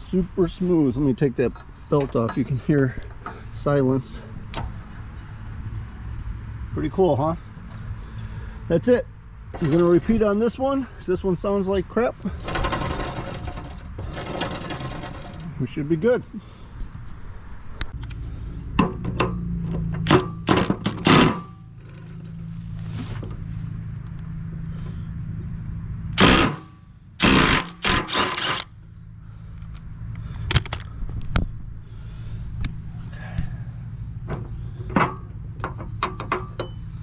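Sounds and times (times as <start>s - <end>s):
steady low hum: 0.0s - 37.0s
metal clanks and knocks: 1.4s - 3.5s, 9.4s - 10.4s, 12.2s - 15.7s, 18.7s - 22.5s, 34.2s - 36.9s
loud rasping bursts: 12.3s - 15.5s, 20.1s - 21.6s, 26.2s - 28.7s.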